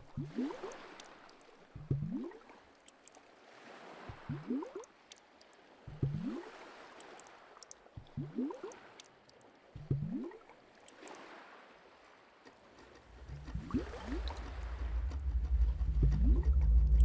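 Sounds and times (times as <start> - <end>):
low bubbling liquid gurgles: 0.0 - 0.8, 1.7 - 2.6, 4.1 - 4.9, 5.9 - 6.4, 8.0 - 8.8, 9.8 - 10.4, 13.1 - 17.0
fizzing hiss with tiny pops: 7.0 - 9.5
low rumble: 13.1 - 17.0.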